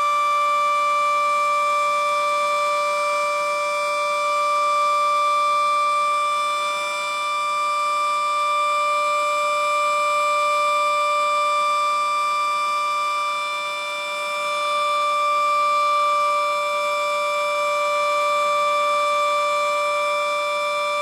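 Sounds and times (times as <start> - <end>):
warning siren steady tone: 0.0 - 21.0.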